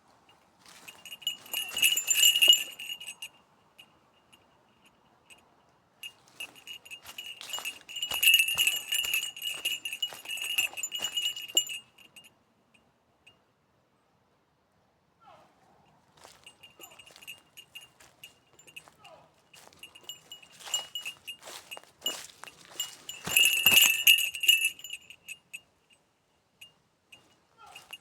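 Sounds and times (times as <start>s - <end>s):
small bell jingling: 0.7s - 4.8s, 6.0s - 12.3s, 16.2s - 26.0s, 27.1s - 28.0s.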